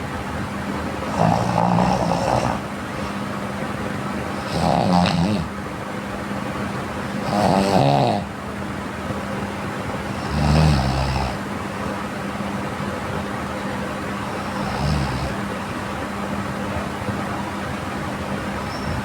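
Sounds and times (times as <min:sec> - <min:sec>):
steady hum and hiss: 0:00.0 - 0:19.0
person snoring: 0:01.1 - 0:03.2, 0:04.4 - 0:05.5, 0:07.2 - 0:08.3, 0:10.1 - 0:11.4.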